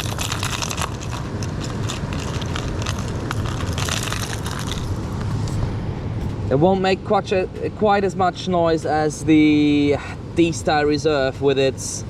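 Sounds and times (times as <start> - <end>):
fishing tackle rustling and clicking: 0.0 - 5.6
steady low rumble: 0.0 - 9.6.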